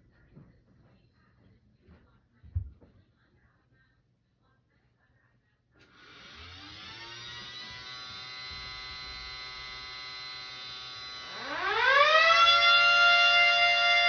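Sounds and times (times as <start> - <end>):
small siren winding up: 5.9 - 14.0
loud siren winding up: 6.0 - 14.0.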